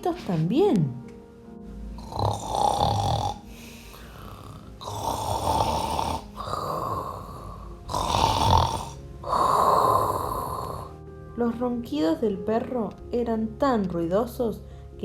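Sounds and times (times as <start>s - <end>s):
loud snoring: 2.0s - 11.0s.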